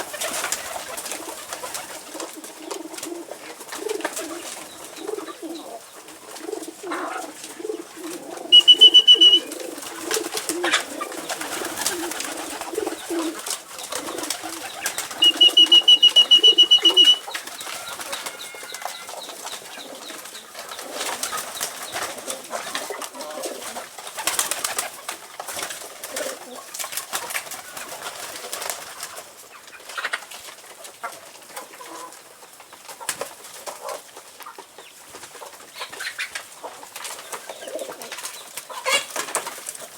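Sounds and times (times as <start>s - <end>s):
pigeons cooing: 0.0s - 19.1s.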